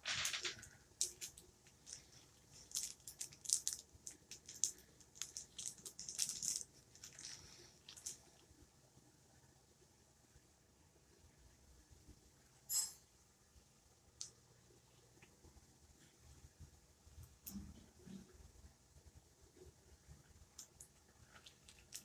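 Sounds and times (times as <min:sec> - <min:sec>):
hard plastic clicks and rustles: 0:00.0 - 0:08.4.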